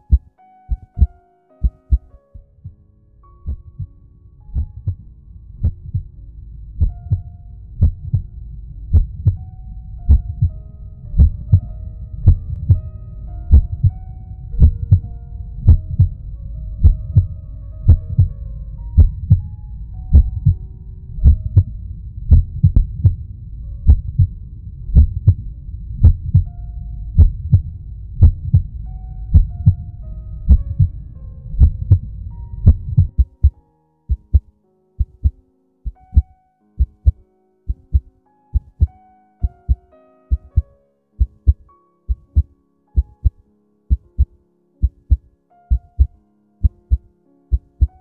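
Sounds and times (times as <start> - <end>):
paired low thumps: 0.0 - 2.8, 3.4 - 48.0
low rumble: 0.8 - 33.5.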